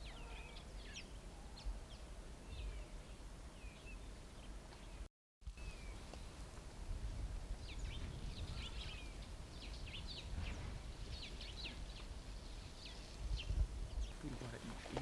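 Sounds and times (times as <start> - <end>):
wind rumble on microphone: 5.5 - 15.0
birds chirping: 7.6 - 15.0.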